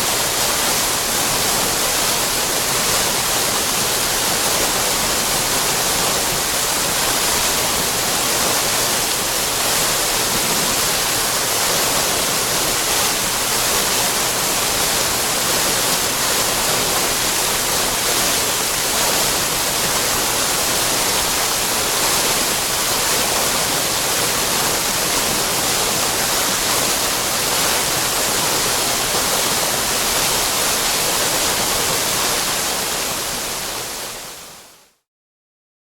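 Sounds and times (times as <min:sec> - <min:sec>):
water fountain splashing: 0:00.0 - 0:34.1.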